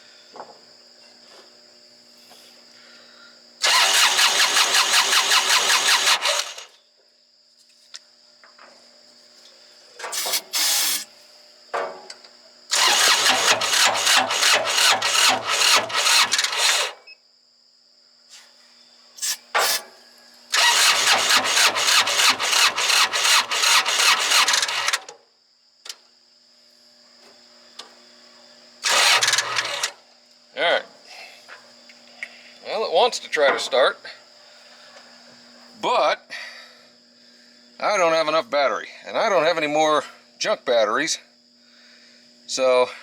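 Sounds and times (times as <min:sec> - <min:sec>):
starter cranking diesel engine: 0:03.6 - 0:06.7, 0:12.7 - 0:17.0, 0:20.5 - 0:25.1, 0:28.8 - 0:30.0.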